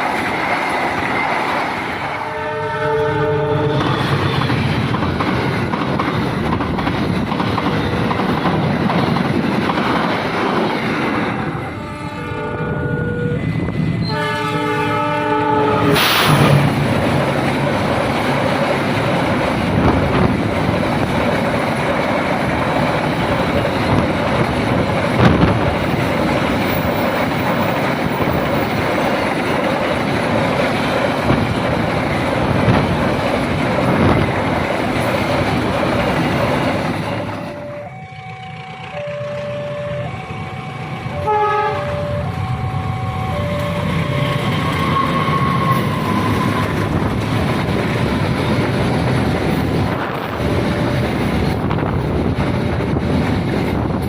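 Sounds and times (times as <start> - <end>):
train rumble and wheel clatter: 0.0 - 54.0
train horn chord: 2.2 - 4.0, 11.4 - 16.3, 37.4 - 45.9
two-tone level crossing alarm: 37.3 - 46.5.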